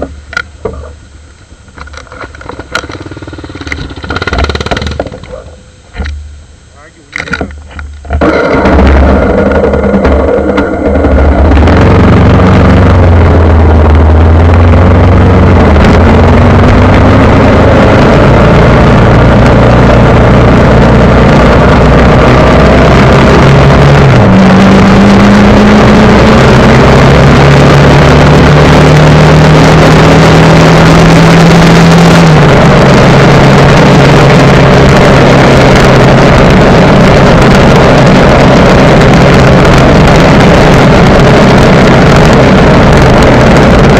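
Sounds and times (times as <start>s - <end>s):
steady rushing noise: 0.0s - 43.9s
vehicle engine running: 0.0s - 43.9s.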